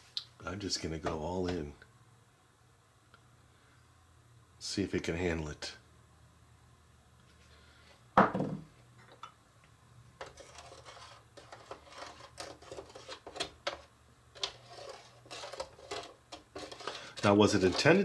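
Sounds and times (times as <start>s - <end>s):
spoon scraping in plastic container: 10.2s - 18.0s.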